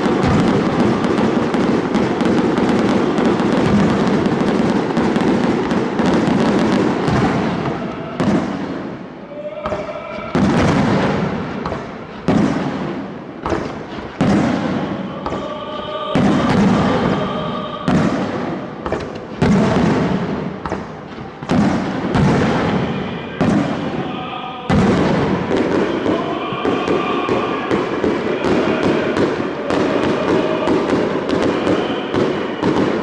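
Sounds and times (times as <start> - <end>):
music: 13.6 - 33.0.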